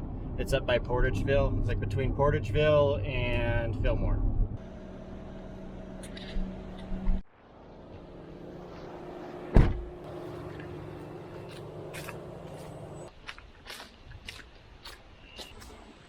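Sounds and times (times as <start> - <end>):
loud thump: 9.5 - 9.9
truck engine idling: 9.9 - 13.1.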